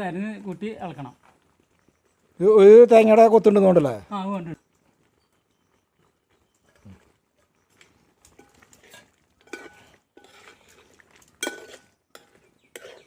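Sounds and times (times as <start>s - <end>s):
spoon scraping a pan: 7.8s - 13.0s.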